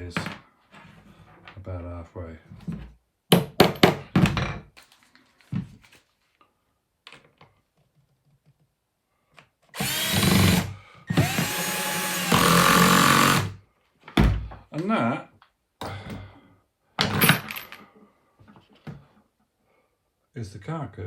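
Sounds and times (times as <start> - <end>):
drill-driver driving a screw: 9.8 - 13.6.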